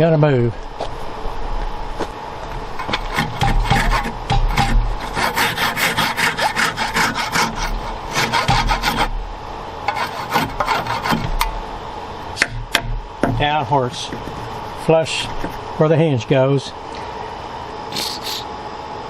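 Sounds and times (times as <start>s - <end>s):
hand saw cutting wood: 2.8s - 9.1s, 9.9s - 11.5s.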